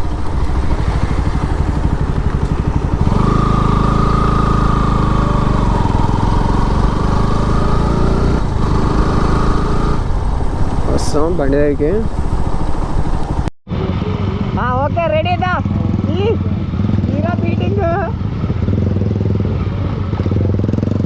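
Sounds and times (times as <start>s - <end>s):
steady droning tone: 0.0s - 14.9s
motorcycle engine running: 0.0s - 21.0s.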